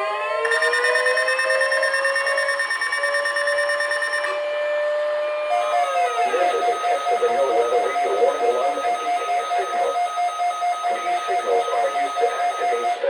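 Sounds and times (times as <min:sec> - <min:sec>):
two-pitch alarm beeping: 0:00.4 - 0:04.5, 0:05.5 - 0:13.0
jumbled broadcast audio: 0:05.5 - 0:13.0.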